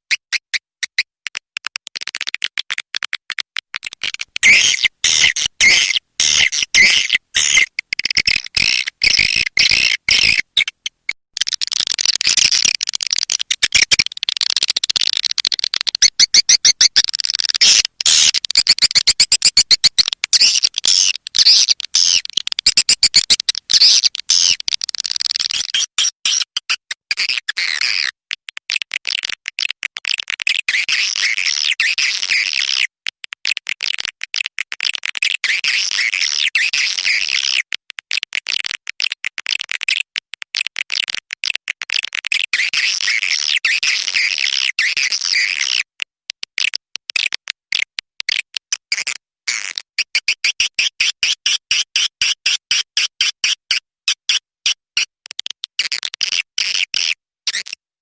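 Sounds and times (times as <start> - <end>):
high buzzy bird twittering playback: 4.0 - 26.1.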